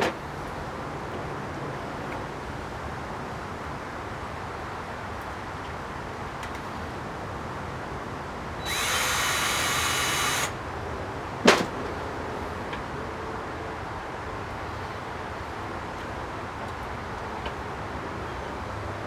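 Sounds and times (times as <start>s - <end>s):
power tool whining: 8.5s - 10.6s.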